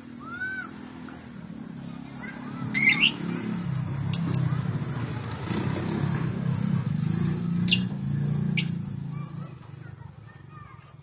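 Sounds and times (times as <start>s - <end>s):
bird shrieking and chirping: 2.6s - 3.3s, 4.1s - 5.2s, 7.6s - 7.9s, 8.6s - 8.8s.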